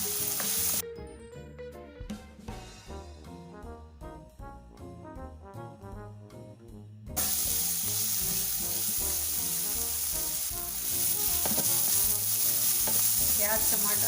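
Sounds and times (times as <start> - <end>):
food sizzling in oil: 0.0 - 0.8, 7.2 - 14.0
brass music: 1.6 - 14.0.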